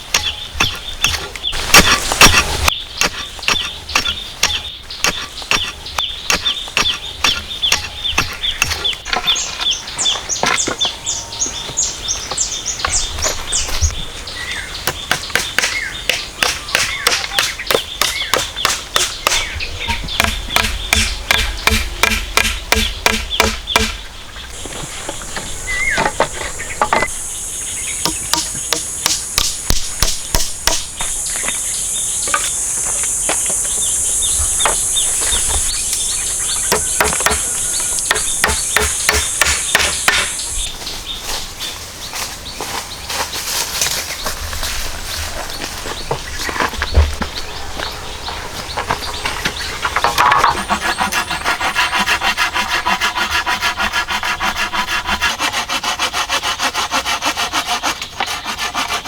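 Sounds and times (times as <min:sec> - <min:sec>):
hand tool strikes: 0:00.0 - 0:09.4, 0:14.9 - 0:24.0, 0:28.0 - 0:31.6, 0:36.7 - 0:40.4
insects buzzing: 0:00.0 - 0:59.0
bird chirps: 0:00.1 - 0:41.2
high insect buzz: 0:19.1 - 0:40.7.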